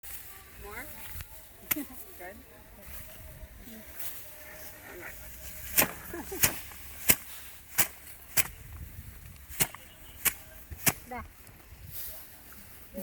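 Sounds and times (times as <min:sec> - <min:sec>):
rice sheaves whacking surface: 0:05.6 - 0:08.7.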